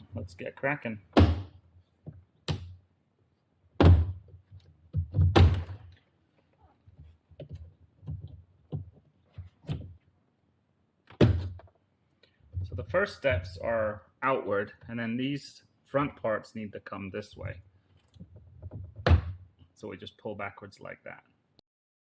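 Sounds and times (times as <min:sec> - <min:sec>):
plastic thunks and clacks: 0:07.3 - 0:10.0.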